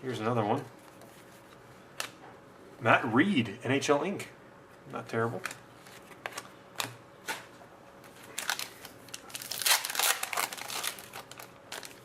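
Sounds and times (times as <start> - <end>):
wrapper crinkling: 8.2 - 12.0.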